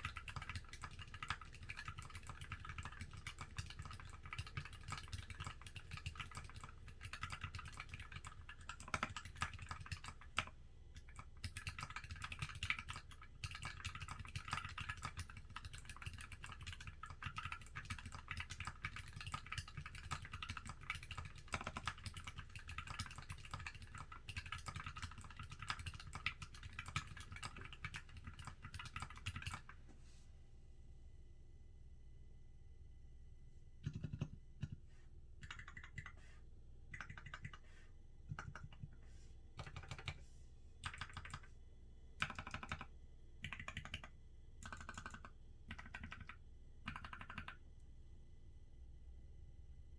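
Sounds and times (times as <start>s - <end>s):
typing on mechanical keyboard: 0.0s - 29.8s, 33.8s - 34.8s, 35.4s - 36.2s, 36.9s - 37.7s, 38.3s - 39.0s, 39.6s - 40.2s, 40.8s - 41.5s, 42.2s - 47.6s.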